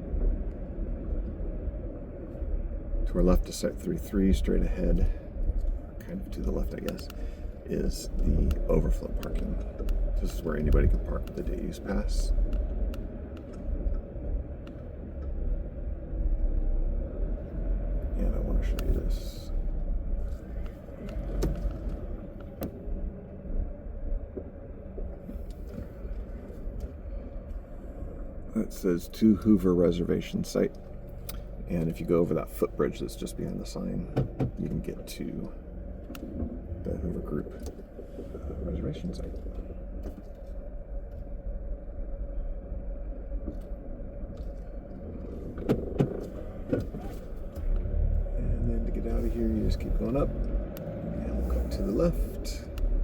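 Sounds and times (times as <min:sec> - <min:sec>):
car engine rumble while driving: 0:00.0 - 0:53.0.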